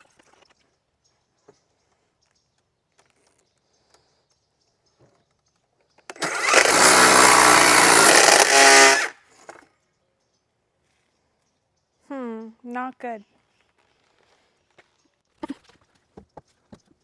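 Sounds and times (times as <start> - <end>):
power saw cutting wood: 6.1 - 9.6.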